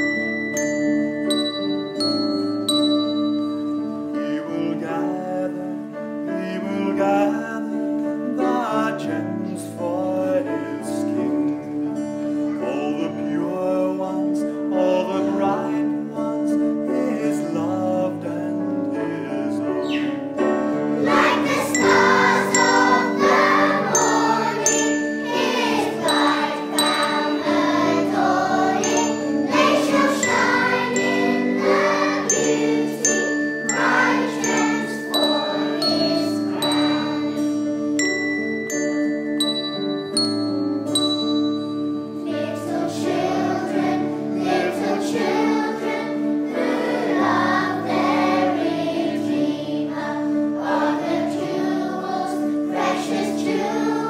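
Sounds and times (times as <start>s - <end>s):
bells playing a tune: 0.0s - 4.2s, 20.8s - 49.2s
people singing: 20.8s - 37.5s, 42.2s - 54.0s.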